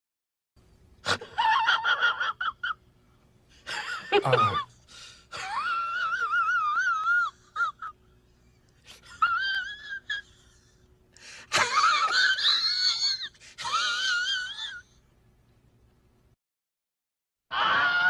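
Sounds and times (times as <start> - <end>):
squeaky comedy squeals: 17.5 - 18.0.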